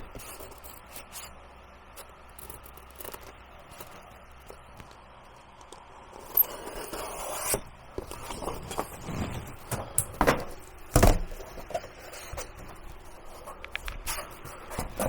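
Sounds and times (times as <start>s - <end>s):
scraping and knocking: 8.0s - 15.0s.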